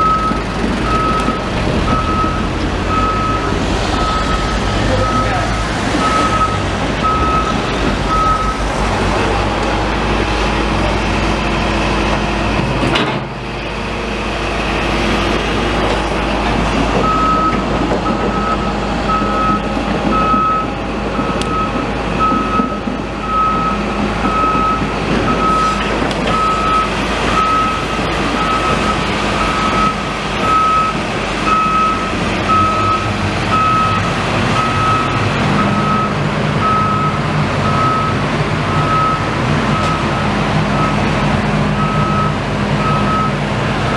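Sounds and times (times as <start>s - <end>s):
reversing alarm beeping: 0.0s - 8.7s, 17.0s - 41.1s, 41.8s - 43.9s
diesel engine running: 0.0s - 43.9s
street traffic: 0.0s - 43.9s.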